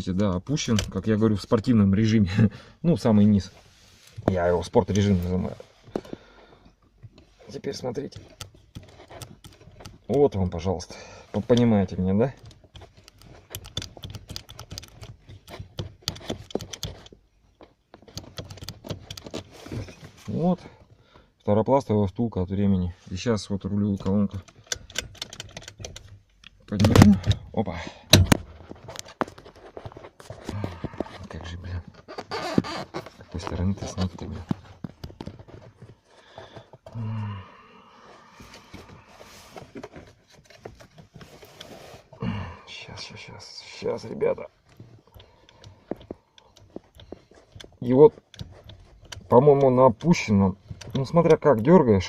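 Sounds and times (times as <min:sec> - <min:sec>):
hand tools clicking and knocking: 0:07.9 - 0:10.6, 0:11.4 - 0:19.9, 0:23.9 - 0:37.0, 0:43.9 - 0:52.0
steering column knocking and clacking: 0:11.4 - 0:19.4.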